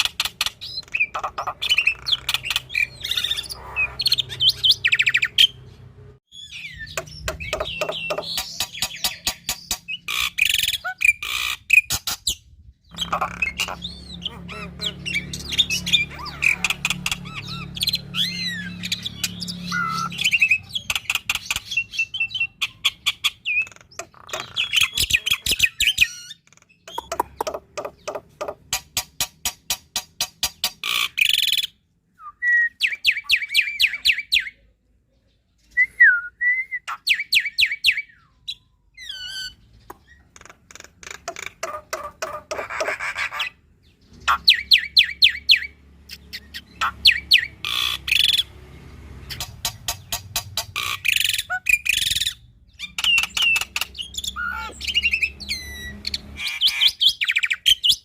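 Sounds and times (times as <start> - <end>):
myna bird singing: 0.0 - 58.0.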